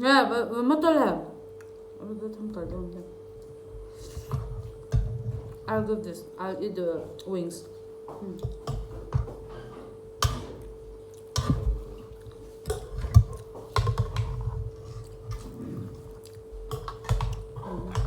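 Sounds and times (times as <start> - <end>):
steady hum: 0.0 - 18.0
dishes clicking and knocking: 12.6 - 14.5.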